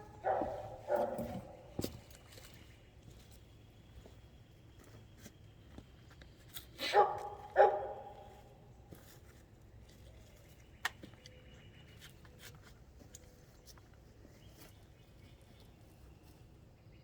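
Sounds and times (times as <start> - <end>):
dog barking: 0.1 - 1.6, 6.8 - 8.2.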